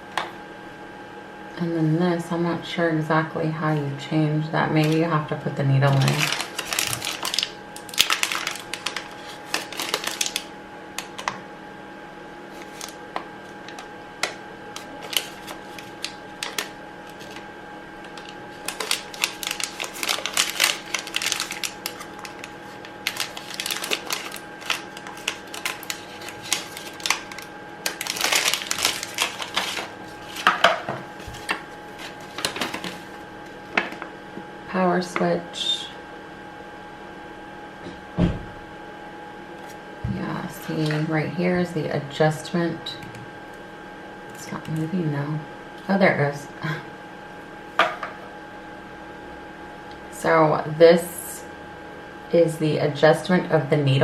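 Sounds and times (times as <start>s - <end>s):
steady hum: 0.0s - 54.0s.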